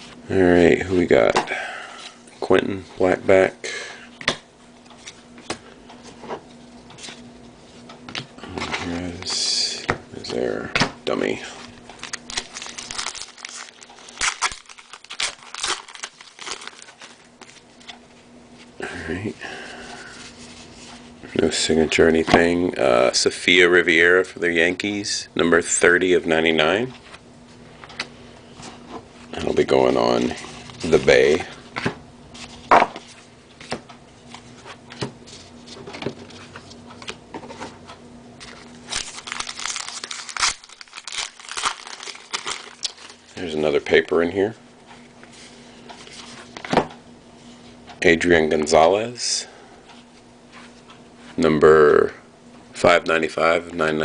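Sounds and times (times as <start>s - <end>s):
pack wrapper crinkling: 11.6s - 17.6s, 38.4s - 44.2s.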